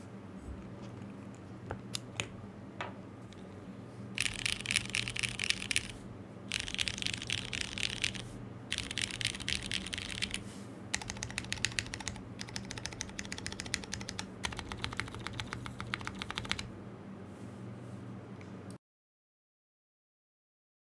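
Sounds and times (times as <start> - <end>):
mechanical keyboard typing: 4.2 - 16.7.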